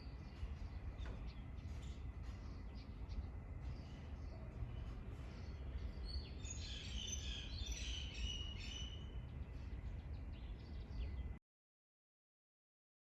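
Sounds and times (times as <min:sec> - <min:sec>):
small birds chirping: 0:00.0 - 0:11.4.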